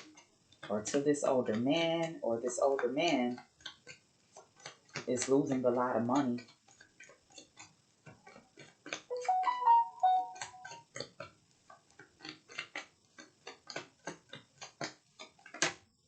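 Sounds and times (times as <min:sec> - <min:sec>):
held musical notes: 0:09.1 - 0:10.8.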